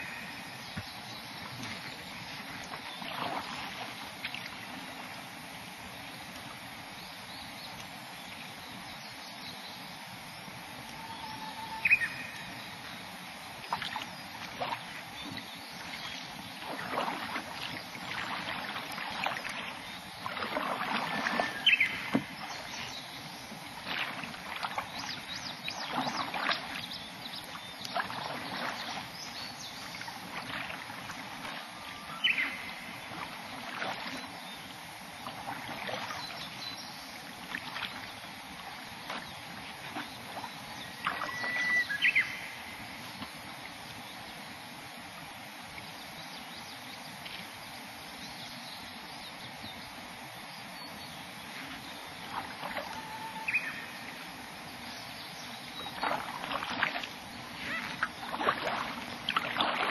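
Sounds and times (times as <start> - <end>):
kayak paddle strokes in water: 0.0 - 48.6, 51.0 - 59.9.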